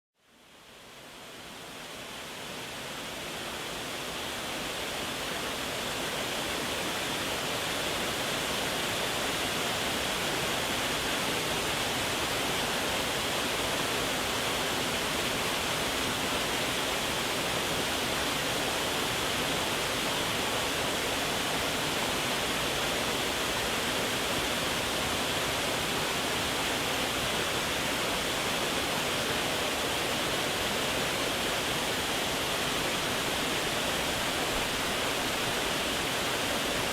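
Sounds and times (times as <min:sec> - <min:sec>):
waterfall rushing: 0:03.6 - 0:36.9.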